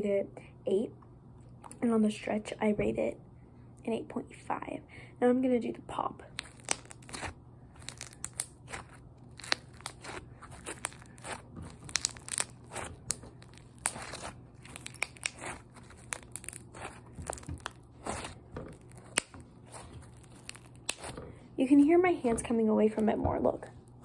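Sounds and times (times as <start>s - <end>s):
hands squishing sticky slime: 6.3s - 21.4s.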